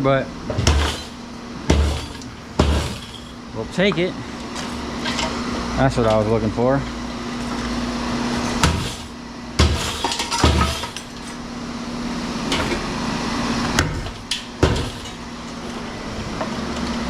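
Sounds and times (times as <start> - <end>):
background hum: 0.0 - 17.0
metal clanks and knocks: 0.5 - 5.3, 8.6 - 11.2, 13.8 - 15.7.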